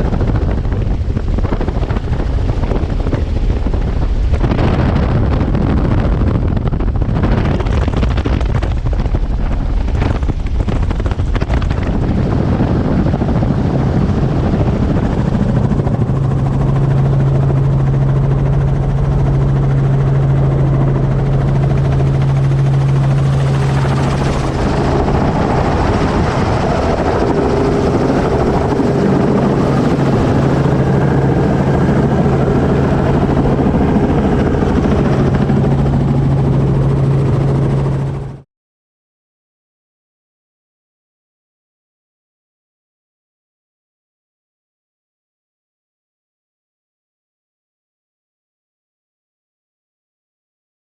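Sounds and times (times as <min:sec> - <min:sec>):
helicopter rotor and engine noise: 0:00.0 - 0:38.4
steady low hum: 0:00.0 - 0:38.4
wind hitting microphone: 0:00.0 - 0:38.4.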